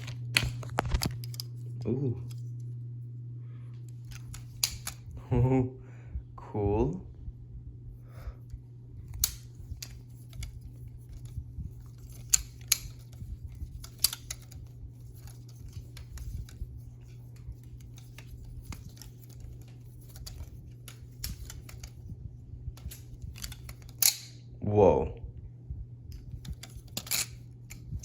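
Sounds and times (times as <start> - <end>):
butterfly knife trainer clicking: 4.0 - 5.0, 12.0 - 16.6.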